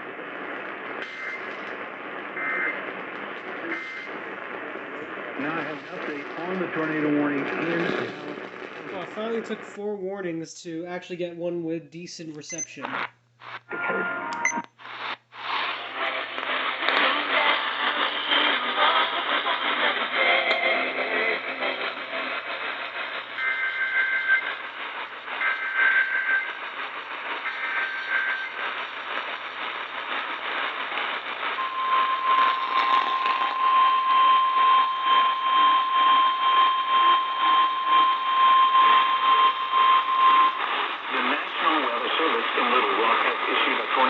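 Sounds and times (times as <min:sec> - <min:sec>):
radio static: 0:00.0 - 0:44.0.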